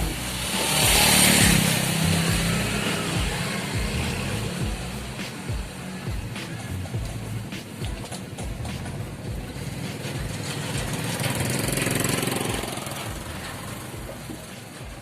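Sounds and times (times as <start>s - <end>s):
auto-rickshaw engine revving: 0.0s - 15.0s.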